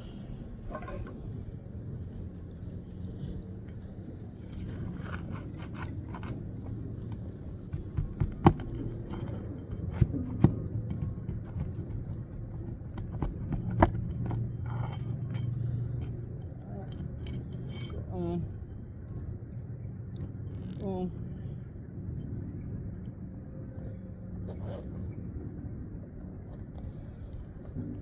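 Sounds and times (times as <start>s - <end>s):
scraping and rustling shingle: 0.0s - 18.8s.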